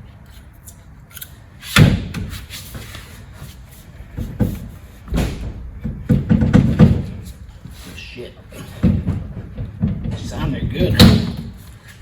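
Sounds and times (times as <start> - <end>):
heavy metallic thud: 4.3 - 7.3.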